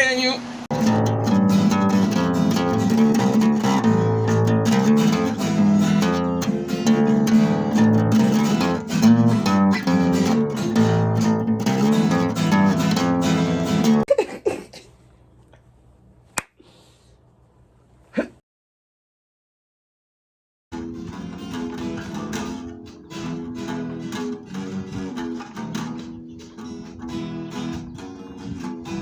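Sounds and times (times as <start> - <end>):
guitar music: 0.7 - 14.0, 20.7 - 29.0.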